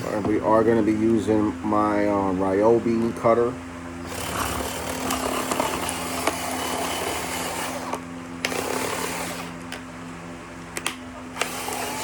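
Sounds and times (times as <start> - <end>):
power cutter cutting plastic: 4.0 - 9.6, 11.3 - 12.0.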